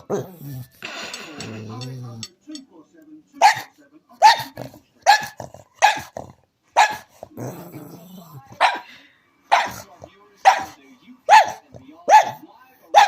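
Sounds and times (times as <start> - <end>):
dog growling: 0.0 - 0.8, 4.5 - 6.5, 7.2 - 8.6
dog barking: 3.4 - 6.2, 6.8 - 7.2, 8.5 - 8.9, 9.5 - 13.0.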